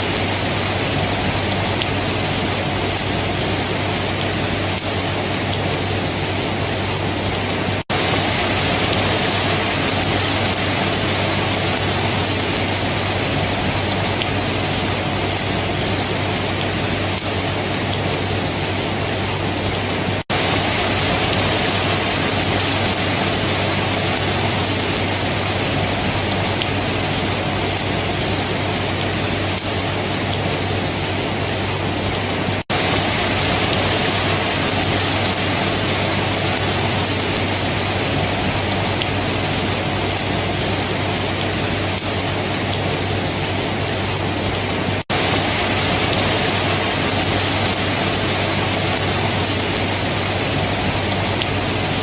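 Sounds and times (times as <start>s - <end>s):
heavy rain: 0.0s - 52.0s.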